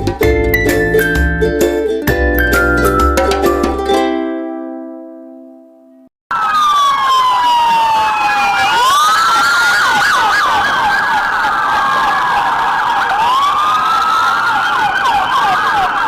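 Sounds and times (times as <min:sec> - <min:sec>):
siren warbling yelp: 0:06.3 - 0:11.9
police siren wail: 0:06.3 - 0:16.0.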